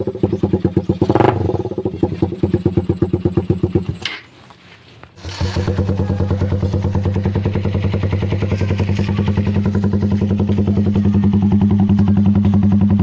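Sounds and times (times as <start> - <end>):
motorcycle engine idling: 0.0 - 4.2, 5.2 - 13.0.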